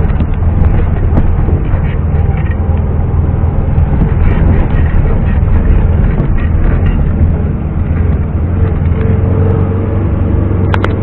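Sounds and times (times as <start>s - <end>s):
engine low rumble: 0.0s - 11.0s.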